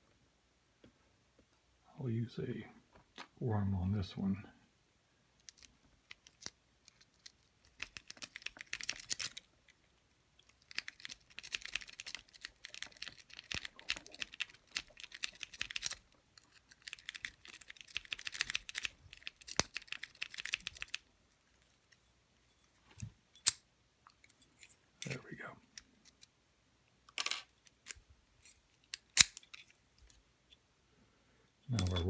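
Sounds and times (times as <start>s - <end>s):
lock pick clicking and scraping: 5.4s - 9.7s, 10.4s - 21.1s, 23.0s - 25.2s, 25.8s - 26.3s, 27.1s - 30.2s.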